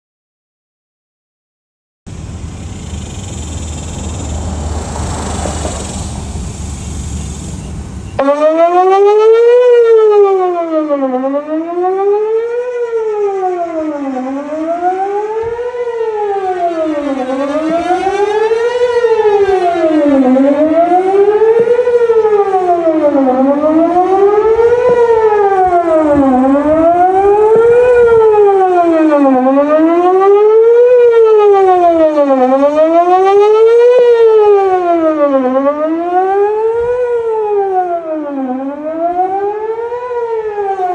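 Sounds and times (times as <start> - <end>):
tornado warning siren wailing: 2.1 - 40.9.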